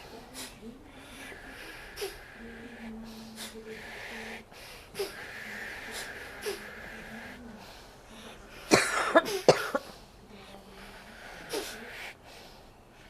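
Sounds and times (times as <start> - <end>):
wheezy breaths: 0.0 - 13.0
person coughing: 8.7 - 9.9.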